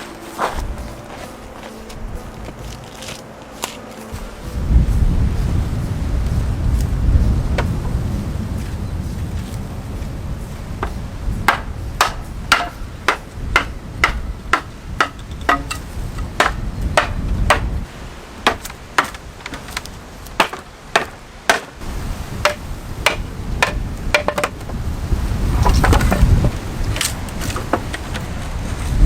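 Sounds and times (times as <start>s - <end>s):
hand tool striking with ring: 10.8s - 17.8s.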